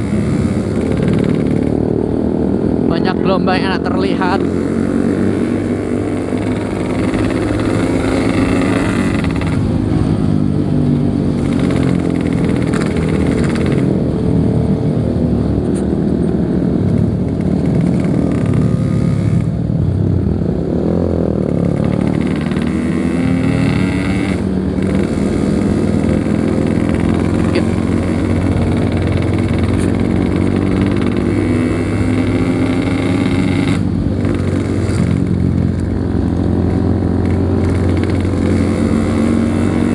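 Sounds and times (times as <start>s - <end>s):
two-stroke motorcycle engine: 0.0s - 39.9s.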